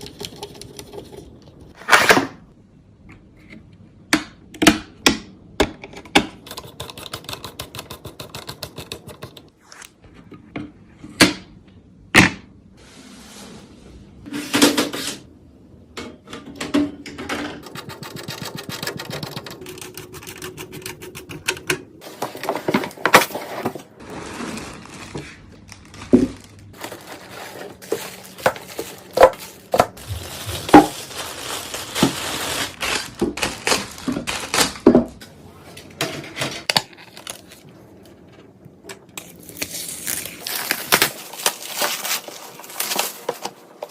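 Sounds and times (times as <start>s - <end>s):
scraping and rustling: 22.0s - 34.8s.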